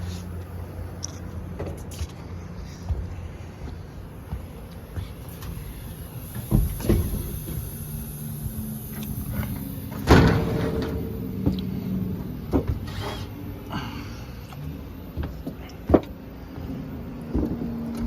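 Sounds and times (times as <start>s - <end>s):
steady low hum: 0.0s - 18.0s
sheet metal clanks and knocks: 10.0s - 11.6s.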